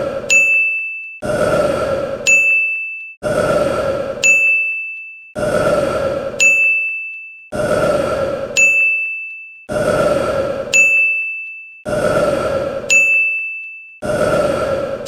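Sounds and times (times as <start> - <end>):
high bell-like ding: 0.3 - 1.2, 2.3 - 3.2, 4.2 - 5.3, 6.4 - 7.5, 8.6 - 9.6, 10.8 - 11.8, 12.9 - 14.0.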